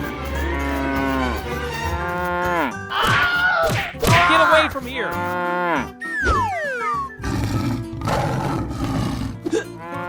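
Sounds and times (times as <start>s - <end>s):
background music: 0.0s - 10.0s
tiger roar: 7.2s - 9.4s.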